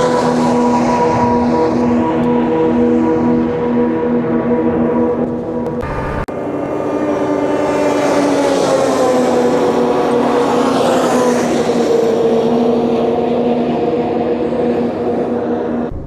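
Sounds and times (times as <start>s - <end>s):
snowmobile engine at high revs: 0.0s - 15.9s.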